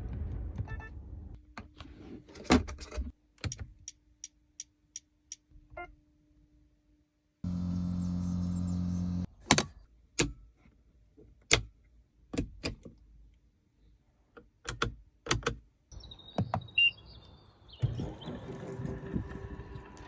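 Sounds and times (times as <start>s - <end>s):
steady hum: 7.5s - 9.3s.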